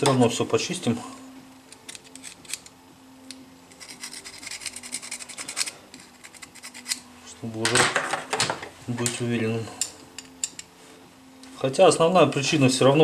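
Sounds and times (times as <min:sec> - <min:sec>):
faint steady hum: 0:00.0 - 0:07.5, 0:08.7 - 0:12.9
small parts rubbing and scraping: 0:01.7 - 0:02.8, 0:03.6 - 0:07.1.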